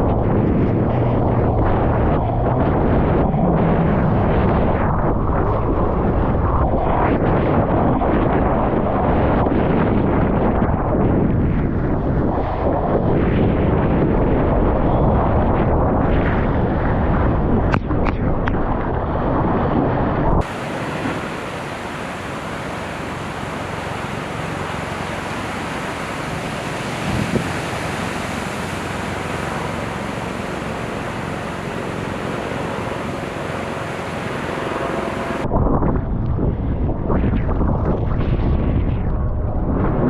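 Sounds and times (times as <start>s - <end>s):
wind buffeting microphone: 0.0s - 40.0s
ocean surf hissing: 20.4s - 35.4s.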